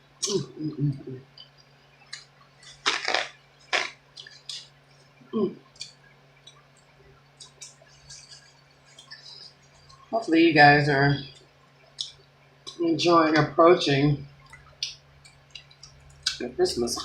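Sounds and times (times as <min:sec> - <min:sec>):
person chewing and smacking: 0:01.3 - 0:05.0, 0:05.7 - 0:10.1, 0:11.9 - 0:12.8, 0:14.4 - 0:16.5
sharp wet clicks: 0:05.7 - 0:10.1, 0:11.4 - 0:12.8, 0:14.4 - 0:16.5.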